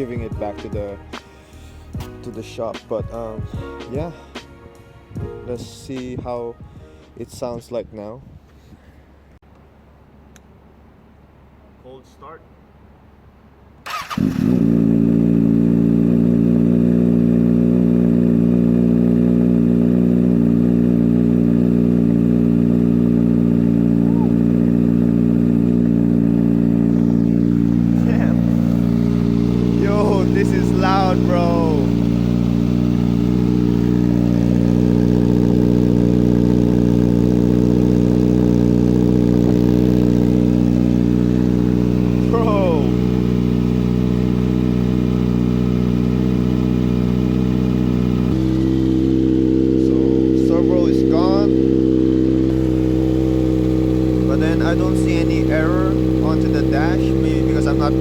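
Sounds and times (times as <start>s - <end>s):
motorcycle engine idling: 0.0s - 4.3s, 13.9s - 58.0s
motorcycle starter cranking: 13.8s - 15.0s.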